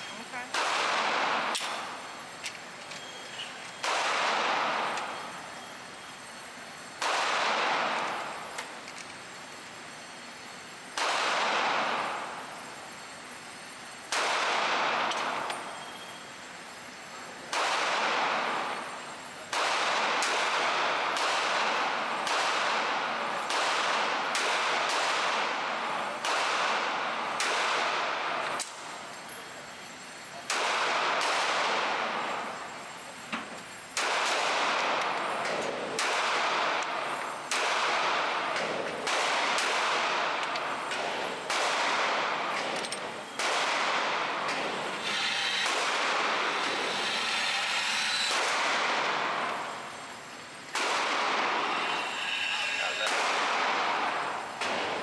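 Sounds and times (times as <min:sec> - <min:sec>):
handgun shots: 0:00.5 - 0:01.8, 0:03.8 - 0:05.1, 0:11.0 - 0:11.8, 0:17.5 - 0:18.4, 0:19.5 - 0:22.8, 0:23.5 - 0:25.3, 0:26.2 - 0:26.8, 0:27.4 - 0:27.9, 0:30.5 - 0:31.8, 0:34.0 - 0:36.9, 0:37.5 - 0:47.1, 0:48.2 - 0:49.8, 0:50.7 - 0:51.9, 0:52.7 - 0:55.0.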